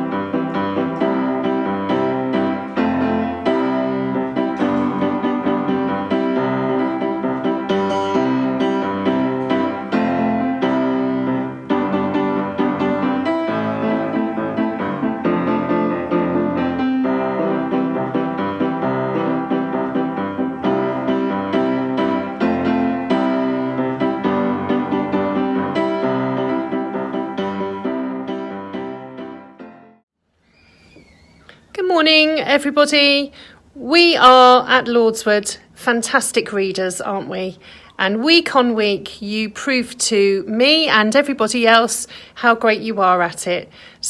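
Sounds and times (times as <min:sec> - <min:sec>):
instrumental piano music: 0:00.0 - 0:30.0.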